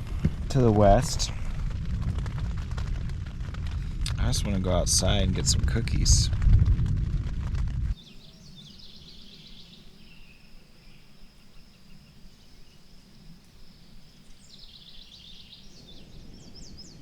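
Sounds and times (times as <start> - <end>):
faint low rumble: 0.0 - 9.4
songbird trilling: 8.0 - 12.9, 13.6 - 17.0.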